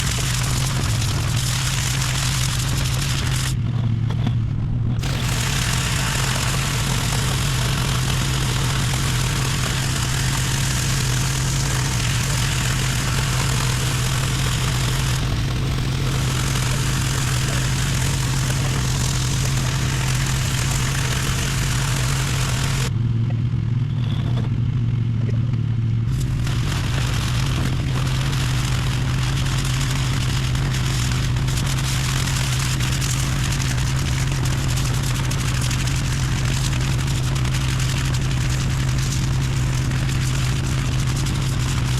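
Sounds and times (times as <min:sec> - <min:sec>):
pressure washer engine hum: 0:00.0 - 0:03.6, 0:05.0 - 0:22.9, 0:26.1 - 0:41.9
water spray hissing: 0:05.0 - 0:22.9.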